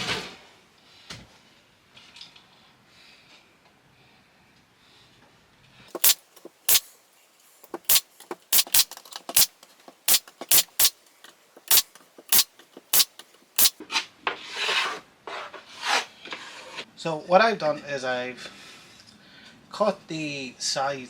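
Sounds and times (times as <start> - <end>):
nails driven into plywood: 5.9 - 6.9, 7.6 - 11.0, 11.6 - 13.7.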